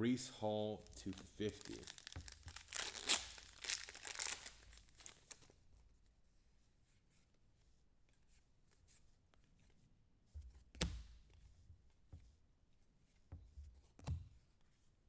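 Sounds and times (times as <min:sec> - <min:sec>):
cards clicking and rustling: 0:00.8 - 0:05.4.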